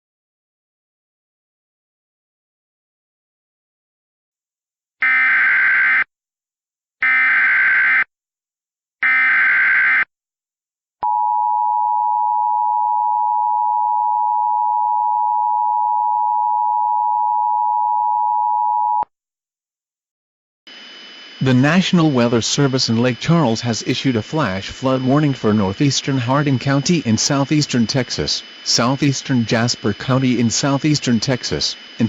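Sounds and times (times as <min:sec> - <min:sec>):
harsh data screech bursts: 0:20.7 - 0:32.0.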